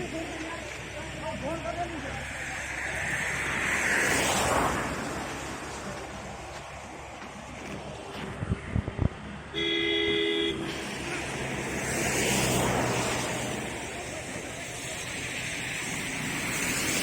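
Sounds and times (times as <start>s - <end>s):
vehicle passing by: 0.9s - 9.1s, 10.6s - 17.0s
vehicle horn: 9.5s - 10.7s.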